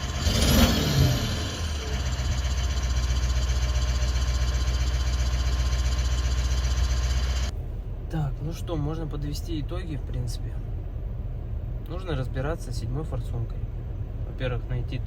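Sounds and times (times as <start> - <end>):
diesel engine idling with knock: 0.0 - 8.1.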